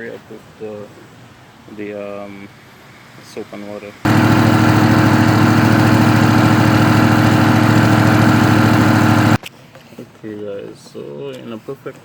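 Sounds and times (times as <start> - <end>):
air compressor running: 4.1 - 9.4.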